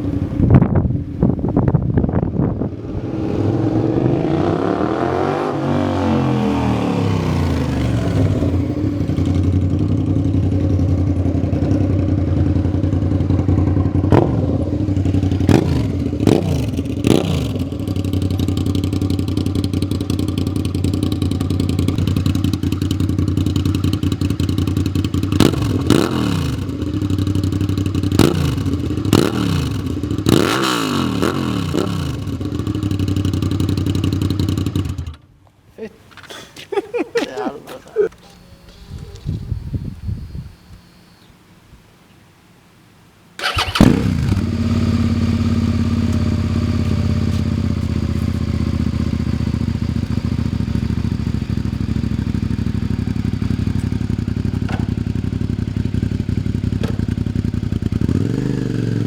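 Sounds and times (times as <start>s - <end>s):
motorcycle engine idling: 7.7s - 30.3s, 43.4s - 59.0s.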